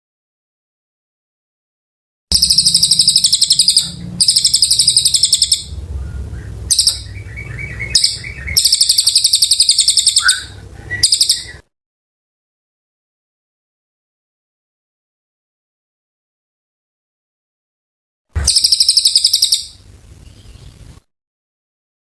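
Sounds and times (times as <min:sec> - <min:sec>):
songbird trilling: 0:02.3 - 0:11.6, 0:18.4 - 0:19.8.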